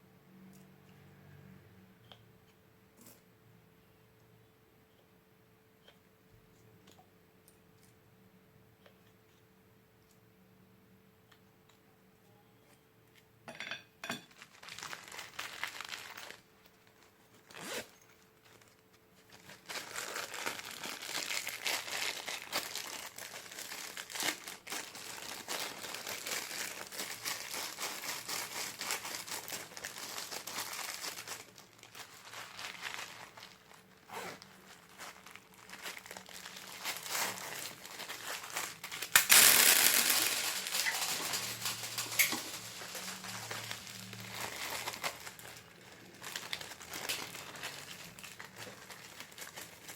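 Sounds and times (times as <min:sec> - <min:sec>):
slime squishing and crackling: 0:19.3 - 0:33.9, 0:34.8 - 0:49.9.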